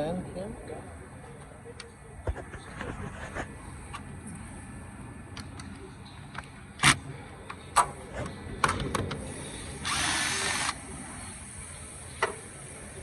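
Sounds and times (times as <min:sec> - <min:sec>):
power tool spinning bolt: 0:09.8 - 0:10.8.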